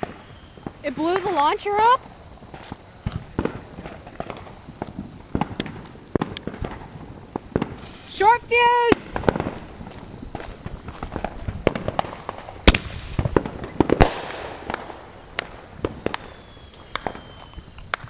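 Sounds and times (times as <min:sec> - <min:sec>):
faint high whistle: 0:00.0 - 0:00.8, 0:16.0 - 0:18.0
firework crackling: 0:00.0 - 0:18.0
fireworks cracks and pops: 0:00.0 - 0:18.0
loud firework bangs: 0:00.0 - 0:18.0.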